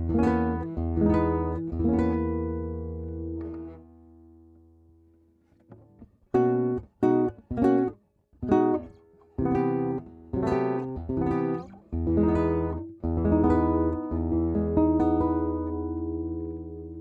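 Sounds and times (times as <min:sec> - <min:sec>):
nylon-string guitar chords: 0:00.0 - 0:05.0, 0:05.7 - 0:17.0.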